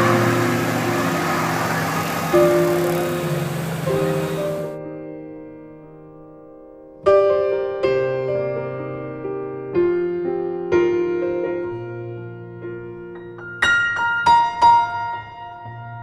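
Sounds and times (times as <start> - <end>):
slow piano chords: 0.0 - 16.0.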